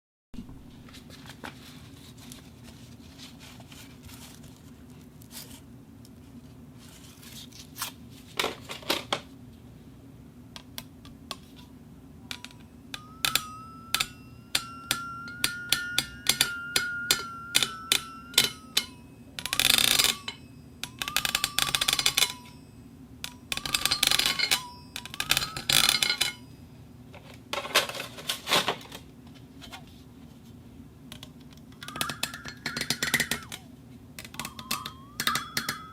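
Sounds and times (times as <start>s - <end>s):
glass clicking on metal plate: 12.3s - 22.6s, 23.2s - 26.4s, 31.8s - 33.6s, 34.2s - 35.9s
ringing squeal: 12.4s - 26.6s, 34.4s - 35.9s.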